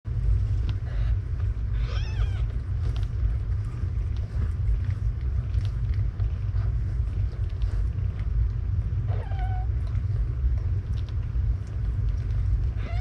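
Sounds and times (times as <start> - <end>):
cat purring: 0.2 - 13.0
kitten mewing: 1.7 - 2.5.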